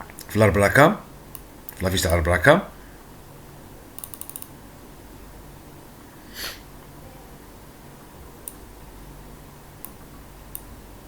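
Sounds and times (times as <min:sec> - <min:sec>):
steady low hum: 0:00.0 - 0:11.0
small clicks: 0:04.0 - 0:04.5, 0:09.8 - 0:10.7
short breath or sniff: 0:06.2 - 0:06.7.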